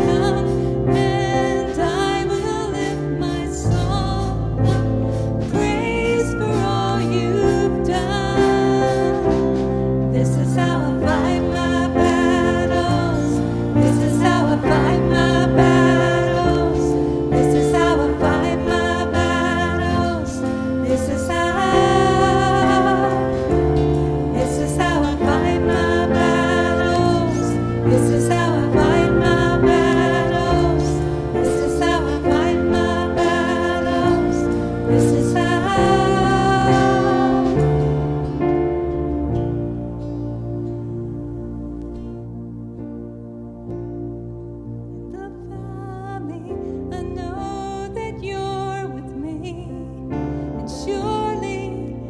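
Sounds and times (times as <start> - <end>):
person singing: 0.0 - 38.8
sustained chords: 0.0 - 48.4
worship band playing: 0.0 - 48.9.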